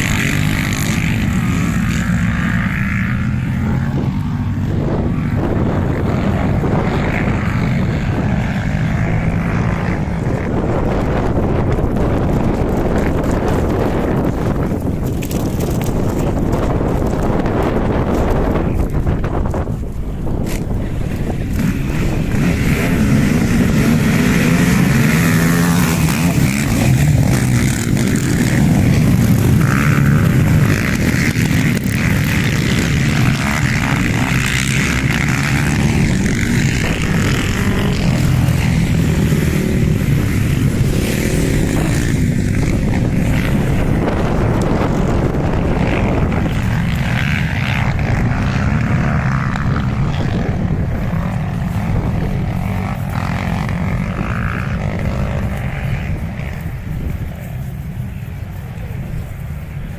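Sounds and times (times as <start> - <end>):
quad bike engines revving: 0.0 - 59.9.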